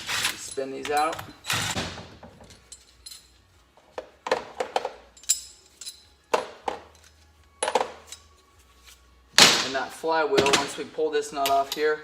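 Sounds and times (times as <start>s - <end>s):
steel bolts clinking on metal: 4.7s - 8.3s.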